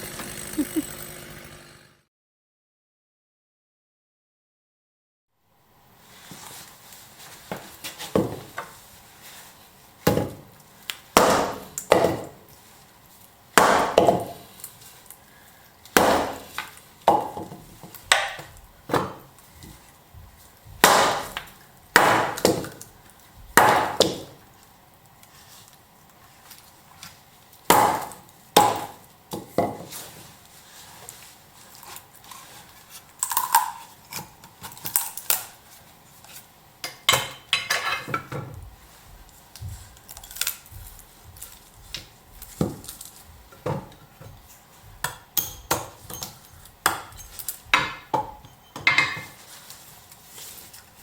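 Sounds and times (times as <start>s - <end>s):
wood being chopped: 11.2s - 12.4s, 13.6s - 14.4s, 16.0s - 17.5s, 20.8s - 22.8s, 23.6s - 24.3s, 27.7s - 29.8s.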